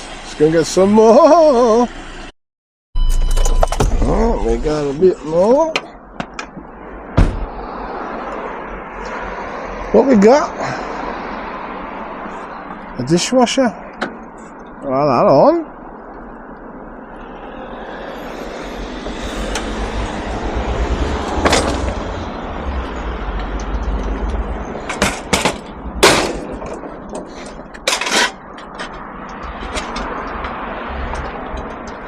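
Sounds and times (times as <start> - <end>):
steady low rumble: 3.3 - 5.0
metal scrap banging and clattering: 21.3 - 22.1, 24.8 - 29.0.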